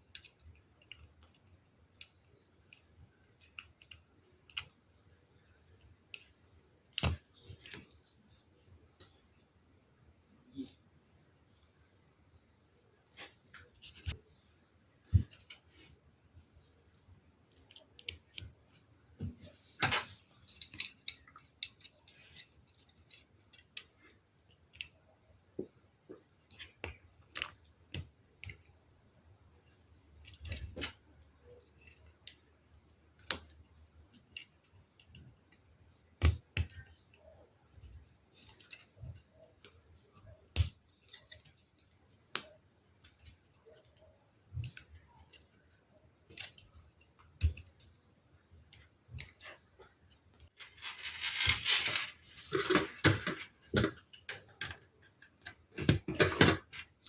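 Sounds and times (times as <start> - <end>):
plastic parts clicking together: 36.2 - 48.0.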